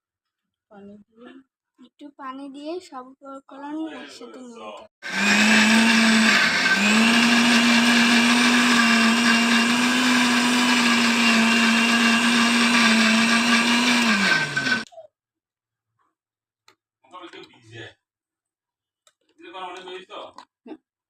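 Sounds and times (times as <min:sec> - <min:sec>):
electric blender grinding: 0:05.0 - 0:14.9.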